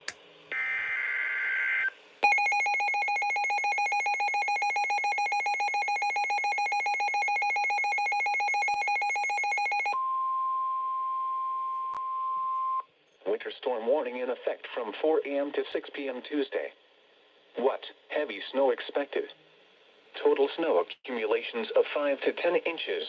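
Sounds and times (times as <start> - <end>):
rapidly pulsing alarm beep: 2.2 - 10.0.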